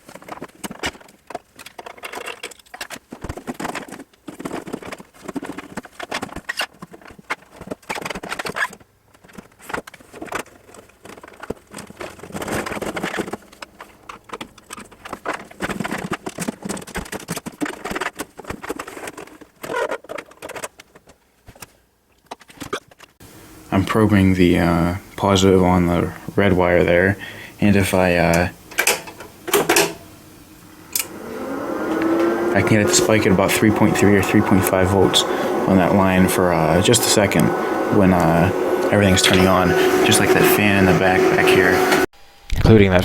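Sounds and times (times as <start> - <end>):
tools and metal parts rattling: 0.0 - 21.2, 28.7 - 30.1.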